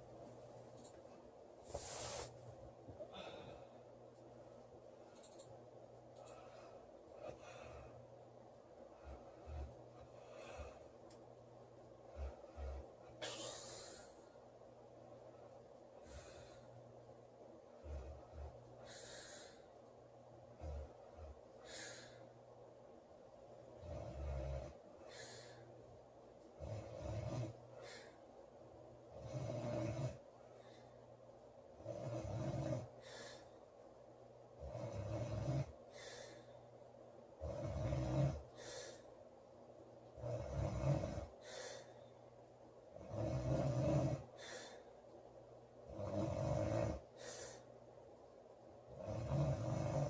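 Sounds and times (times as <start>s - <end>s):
woman breathing heavily: 1.6s - 4.4s, 6.2s - 11.2s, 11.9s - 14.5s, 15.4s - 17.0s, 17.7s - 22.6s, 24.7s - 25.9s, 27.5s - 28.5s, 32.9s - 33.9s, 35.7s - 36.9s, 38.4s - 39.3s, 41.2s - 42.4s, 44.3s - 45.1s, 46.9s - 47.9s
woman snoring: 23.8s - 25.6s, 26.6s - 28.1s, 29.1s - 30.2s, 31.8s - 33.5s, 34.6s - 36.3s, 37.4s - 39.0s, 40.2s - 41.9s, 43.0s - 44.8s, 45.9s - 47.6s, 48.9s - 50.0s
woman lightly snoring: 37.4s - 38.6s, 40.2s - 41.9s, 43.0s - 44.8s, 45.9s - 47.6s, 48.9s - 50.0s.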